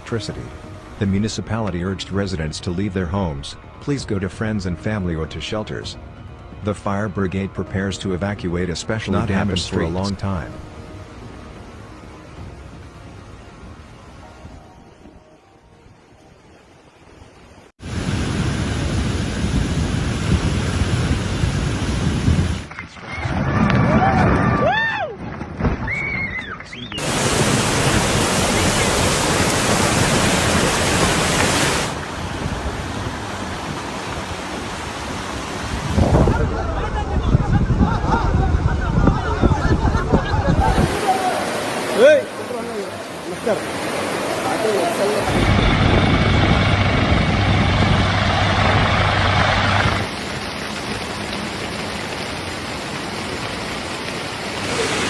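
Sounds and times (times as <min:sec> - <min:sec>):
floodwater rushing: 0:15.9 - 0:37.4, 0:39.3 - 0:55.0
quiet even rushing noise: 0:40.6 - 0:55.0
loud rushing noise: 0:43.1 - 0:50.4
engine hum: 0:45.4 - 0:54.6.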